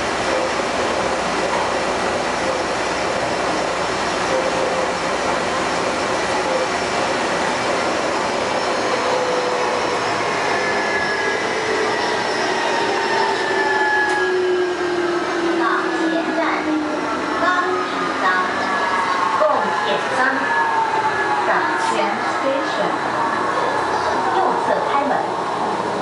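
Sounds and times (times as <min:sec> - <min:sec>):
train rolling rush: 0:00.0 - 0:26.0
high whining tones sliding in pitch: 0:08.1 - 0:17.3.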